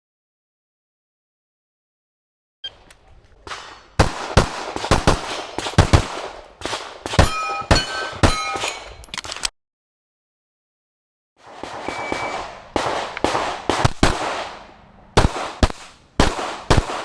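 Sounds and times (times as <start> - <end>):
sharp knocks and metallic clangs: 7.0 - 9.5.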